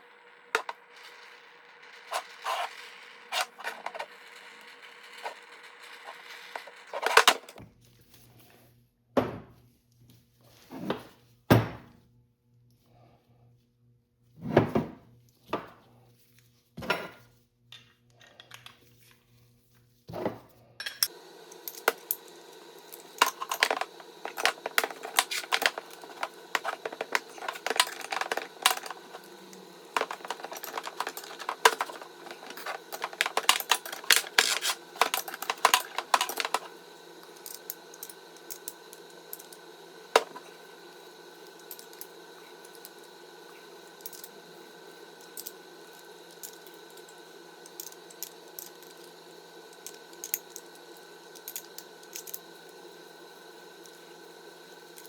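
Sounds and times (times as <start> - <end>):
steady background hum: 0.0 - 7.6, 20.8 - 55.0
metal tools clinking: 0.5 - 4.2, 5.2 - 7.6, 20.8 - 40.5.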